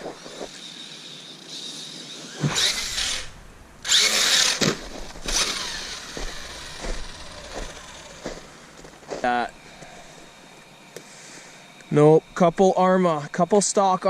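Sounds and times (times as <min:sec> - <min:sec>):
electric motor whining: 0:00.0 - 0:11.0.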